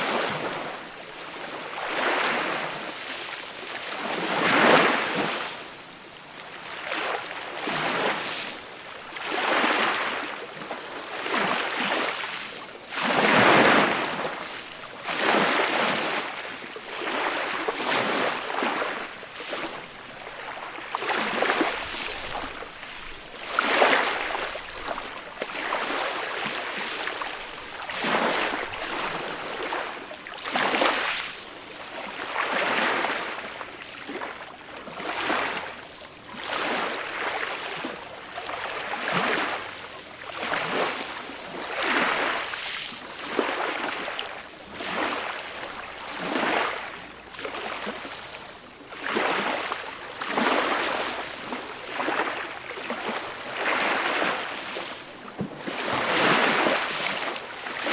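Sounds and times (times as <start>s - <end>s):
small waves breaking on shore: 0.0s - 57.9s.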